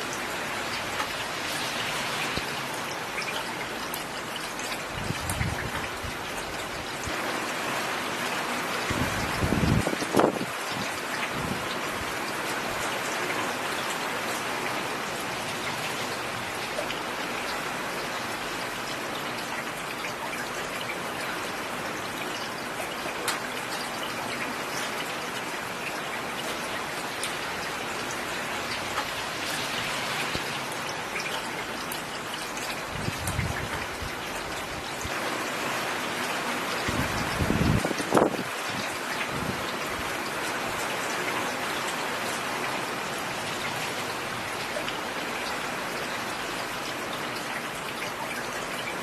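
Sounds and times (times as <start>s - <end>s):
rain falling on a road: 0.0s - 49.0s.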